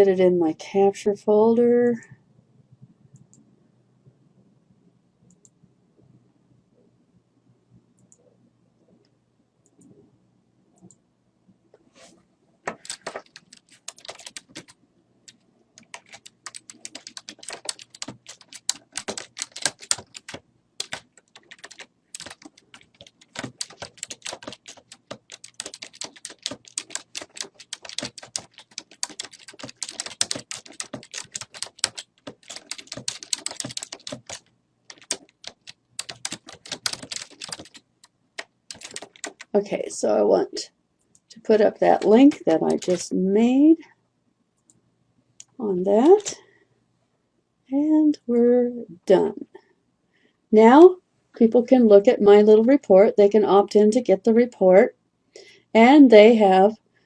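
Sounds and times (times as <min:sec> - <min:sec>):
computer keyboard typing: 0:12.7 - 0:37.8, 0:38.4 - 0:39.5, 0:41.9 - 0:43.1.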